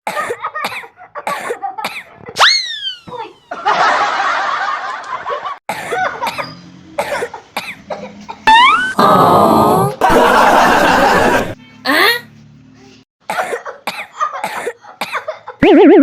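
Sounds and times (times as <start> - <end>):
falling whistle-like tone: 2.4 - 3.1, 8.5 - 9.0.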